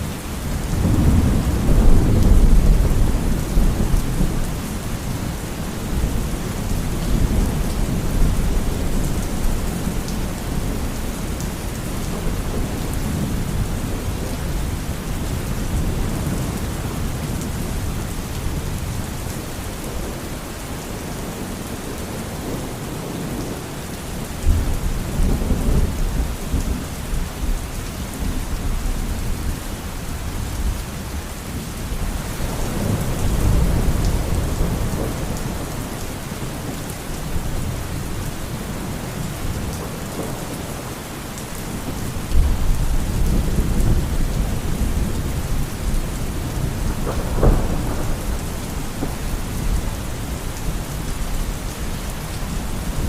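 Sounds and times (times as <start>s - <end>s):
steady rain: 0.0s - 53.0s
thunder rumbling: 0.6s - 18.0s, 41.7s - 53.0s.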